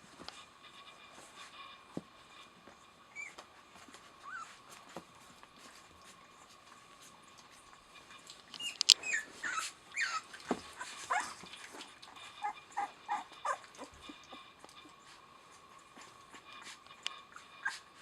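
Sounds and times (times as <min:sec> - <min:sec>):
puppies whimpering: 0:03.1 - 0:03.4, 0:04.2 - 0:04.6, 0:08.5 - 0:18.0.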